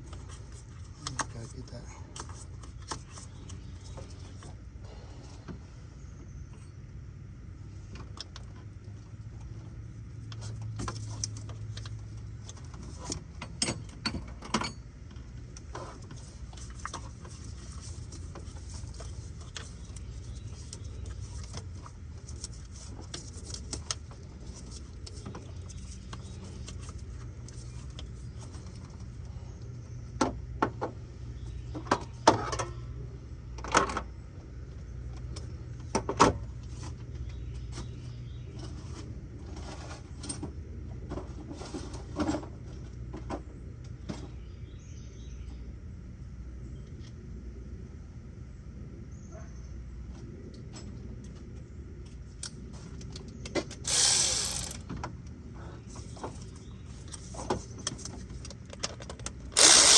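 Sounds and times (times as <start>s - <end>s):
metallic clicks and clinks of tools: 53.9s - 54.8s.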